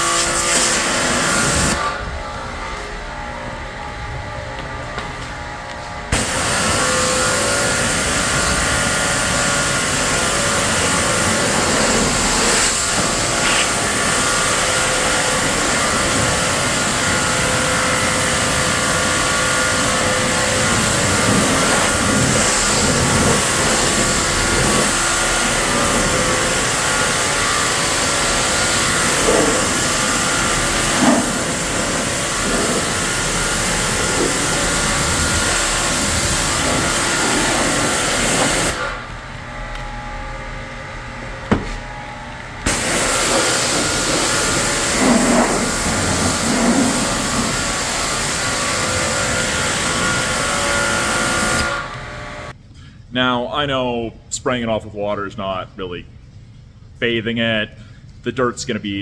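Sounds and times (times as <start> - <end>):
high-pressure water spray hiss: 0.0 - 1.8, 6.1 - 39.0, 42.7 - 51.9
pressure washer motor hum: 0.0 - 52.6.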